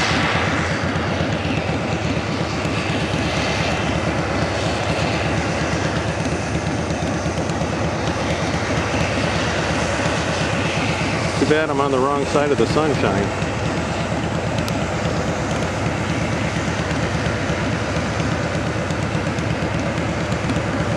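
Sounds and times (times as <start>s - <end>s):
combine harvester drone: 0.0s - 20.9s.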